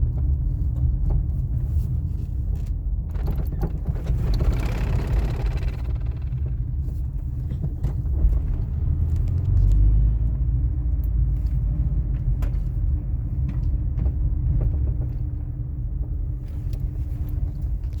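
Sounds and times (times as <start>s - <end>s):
low road rumble and hum: 0.0s - 18.0s
sharp clunks and knocks: 3.1s - 6.7s.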